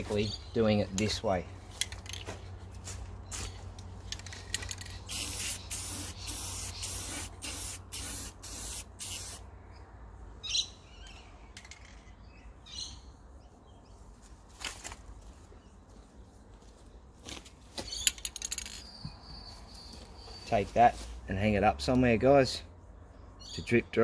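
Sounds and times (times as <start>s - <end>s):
spray hissing bursts: 5.1s - 9.4s.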